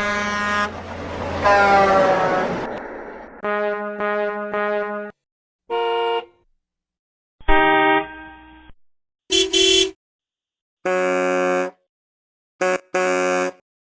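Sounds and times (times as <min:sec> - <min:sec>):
vehicle horns honking: 0:00.0 - 0:00.8, 0:03.4 - 0:06.4, 0:07.4 - 0:08.7, 0:09.3 - 0:10.0, 0:10.9 - 0:11.8, 0:12.6 - 0:13.6.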